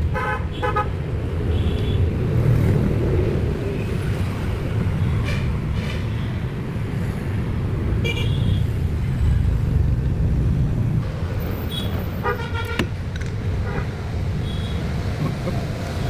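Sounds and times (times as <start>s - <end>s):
engines and road traffic rumble: 0.0s - 16.0s
vehicle horn toots: 11.6s - 12.9s, 13.6s - 14.9s.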